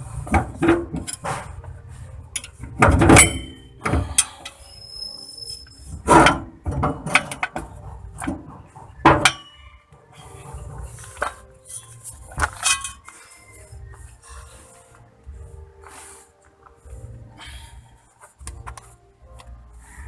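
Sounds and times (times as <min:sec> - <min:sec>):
metal tools clinking: 0:02.3 - 0:08.4, 0:11.0 - 0:13.3.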